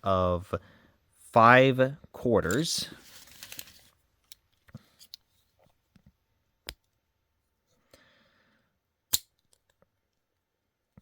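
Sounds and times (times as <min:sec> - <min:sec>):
soft rustle: 0:02.8 - 0:04.0.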